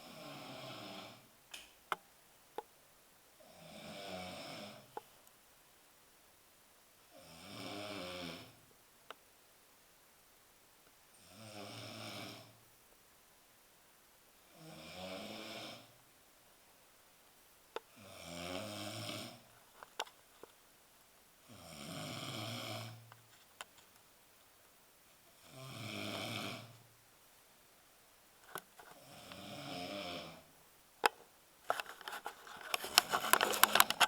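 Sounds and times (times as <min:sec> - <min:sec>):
loud snoring: 0:00.0 - 0:01.3, 0:03.4 - 0:04.9, 0:07.2 - 0:08.6, 0:11.2 - 0:12.6, 0:14.5 - 0:16.0, 0:18.0 - 0:19.5, 0:21.4 - 0:23.0, 0:25.4 - 0:26.8, 0:29.0 - 0:30.5
faint clicks: 0:31.0 - 0:34.0.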